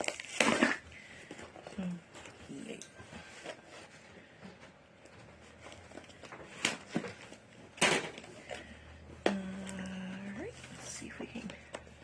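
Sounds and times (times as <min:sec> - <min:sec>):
packaging rustling: 0:00.0 - 0:02.4.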